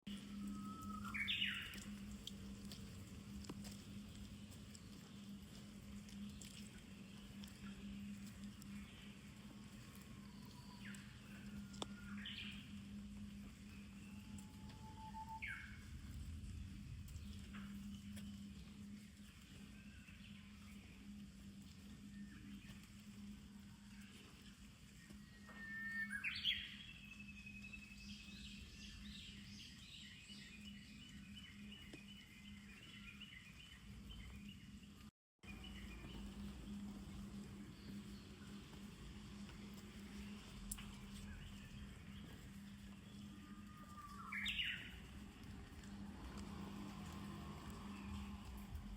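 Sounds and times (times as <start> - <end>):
bird singing whistled song: 0.1 - 2.0, 13.7 - 16.2, 25.0 - 34.7, 43.0 - 45.0
steady low hum: 0.1 - 14.9, 15.6 - 25.6, 33.7 - 44.2.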